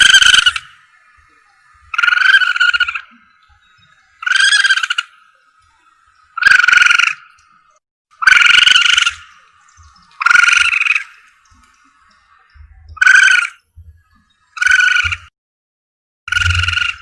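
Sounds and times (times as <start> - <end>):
harsh screechy animal call: 0.0 - 0.8, 1.9 - 3.2, 4.2 - 5.1, 8.2 - 9.2, 13.0 - 13.6.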